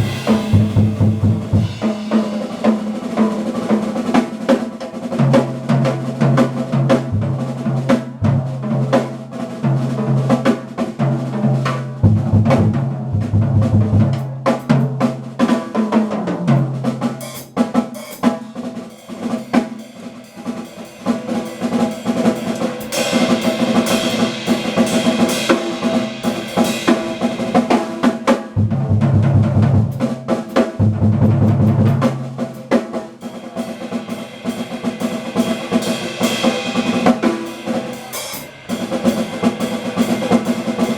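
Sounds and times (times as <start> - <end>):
double bass notes: 0.0 - 1.8, 12.0 - 14.1, 30.8 - 32.0
drum kit playing busily: 0.0 - 40.9.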